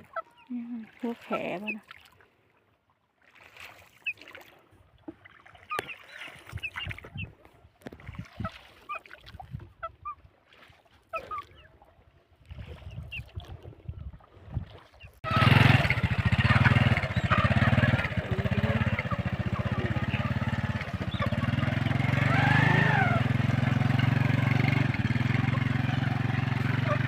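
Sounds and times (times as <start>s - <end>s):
ducks calling: 0.0s - 0.5s, 5.6s - 7.3s, 15.2s - 27.0s
small engine running: 15.2s - 27.0s.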